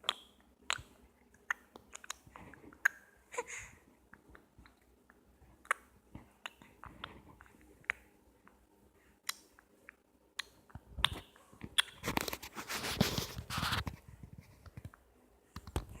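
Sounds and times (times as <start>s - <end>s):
baby making wet mouth noises: 0.0s - 3.6s.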